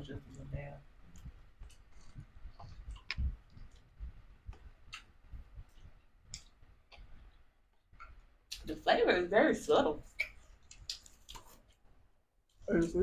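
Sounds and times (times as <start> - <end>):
soft low thumps: 0.0 - 7.3
wet mouth clicks and smacks: 1.2 - 8.6, 10.1 - 11.8.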